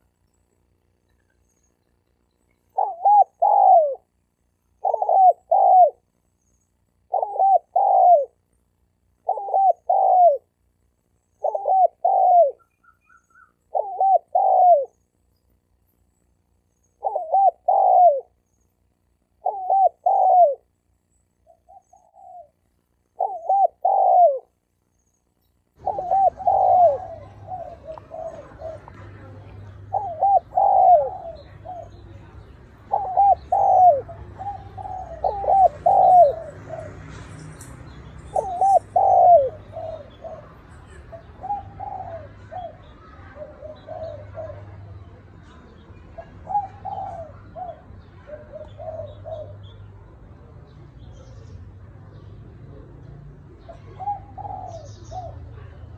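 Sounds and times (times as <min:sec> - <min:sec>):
low hum and hiss: 0:00.0 - 0:36.9
doves cooing: 0:02.6 - 0:06.2, 0:07.0 - 0:08.5, 0:09.2 - 0:10.6, 0:11.4 - 0:15.0, 0:17.0 - 0:18.4, 0:19.3 - 0:20.8, 0:21.4 - 0:24.6, 0:25.8 - 0:45.2, 0:46.0 - 0:50.1, 0:53.5 - 0:55.9.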